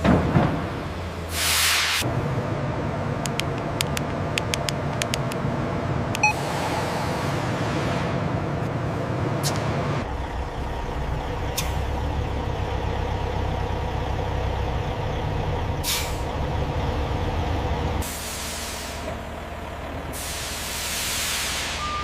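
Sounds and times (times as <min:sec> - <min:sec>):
heavy machinery rumbling: 0:00.0 - 0:01.5, 0:02.1 - 0:22.0
compressed air hissing: 0:18.0 - 0:19.1, 0:20.1 - 0:21.8.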